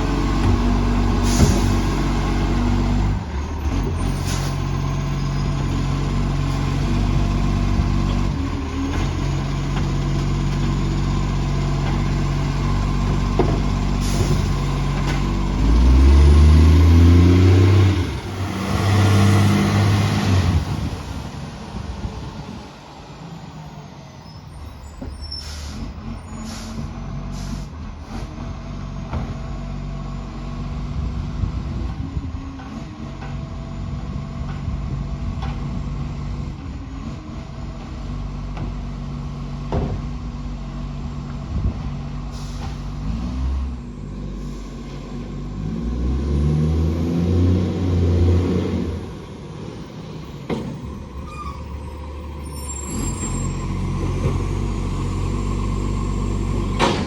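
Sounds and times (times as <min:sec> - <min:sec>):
rough diesel engine exhaust: 0:00.0 - 0:57.0
air brake hisses: 0:25.2 - 0:28.3, 0:42.3 - 0:43.0, 0:44.4 - 0:45.0.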